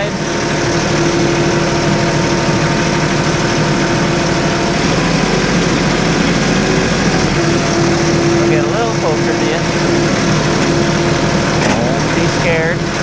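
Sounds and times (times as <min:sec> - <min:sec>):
tractor engine running: 0:00.0 - 0:13.0.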